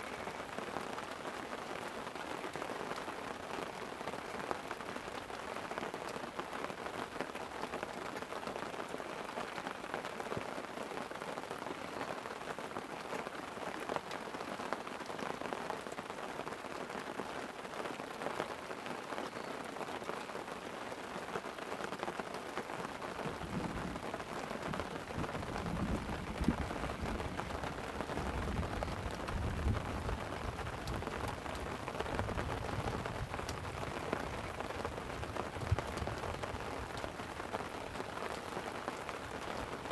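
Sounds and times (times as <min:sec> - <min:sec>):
light rain on a tent: 0:00.0 - 0:39.9
rolling thunder: 0:23.2 - 0:37.0.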